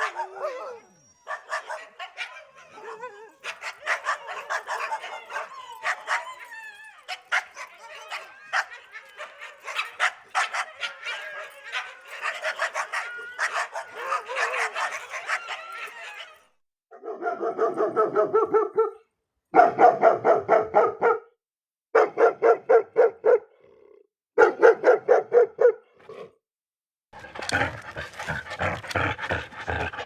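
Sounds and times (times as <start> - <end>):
dogs barking and yipping: 0.0 - 16.4, 27.2 - 30.0
dogs whining: 0.0 - 16.4, 27.2 - 30.0.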